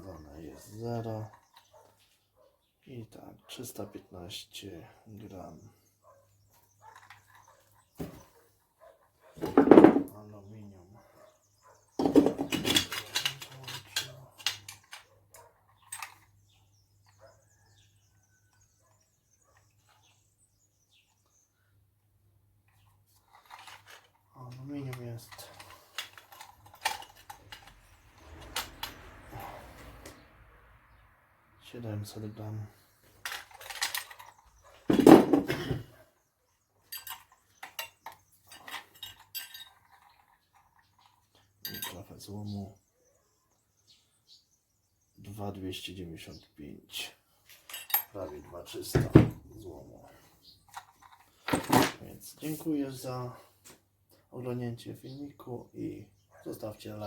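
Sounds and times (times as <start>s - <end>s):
metal scrap clattering: 12.0s - 14.8s, 33.2s - 35.9s
metallic clinks and knocks: 12.0s - 17.2s, 23.2s - 29.6s, 33.2s - 35.8s, 36.8s - 42.1s, 47.4s - 48.2s.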